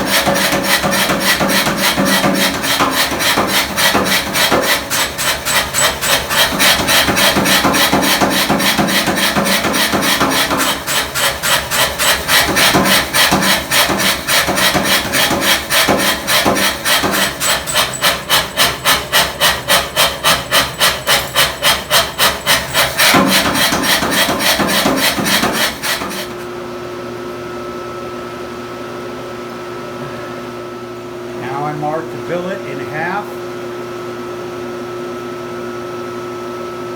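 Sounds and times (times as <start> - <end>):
rapid strokes on metal billet: 0.0 - 26.4
fan-like hum: 0.0 - 36.9.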